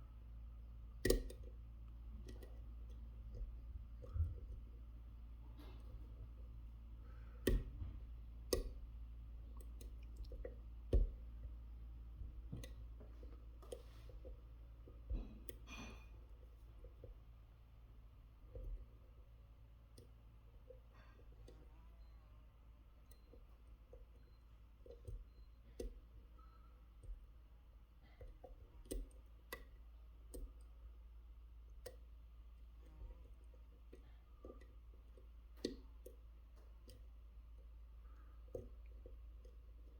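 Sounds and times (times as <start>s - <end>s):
lock pick clicking: 1.0s - 1.5s, 8.5s - 8.8s.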